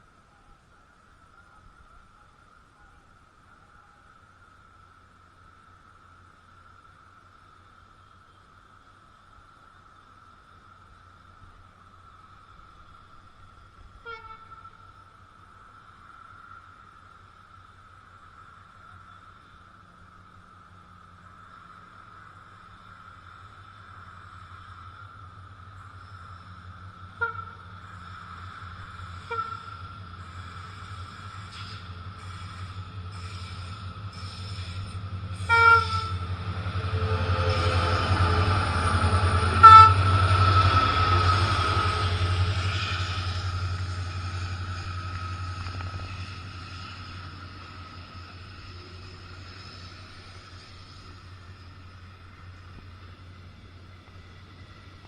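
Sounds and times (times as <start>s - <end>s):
locomotive horn toots: 14.0s - 14.8s, 27.2s - 27.7s, 29.2s - 29.9s, 31.5s - 43.4s
locomotive engine rumble: 17.8s - 55.0s.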